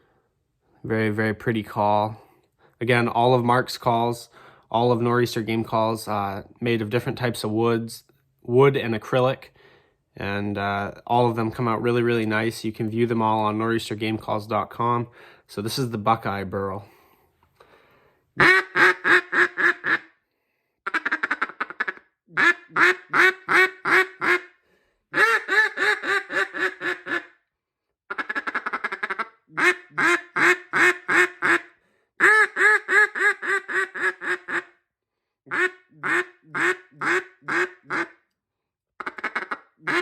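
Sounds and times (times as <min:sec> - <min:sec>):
duck call quacks: 0:18.4 - 0:20.1, 0:20.8 - 0:24.5, 0:25.1 - 0:27.4, 0:28.1 - 0:34.8, 0:35.5 - 0:38.2, 0:39.0 - 0:40.0.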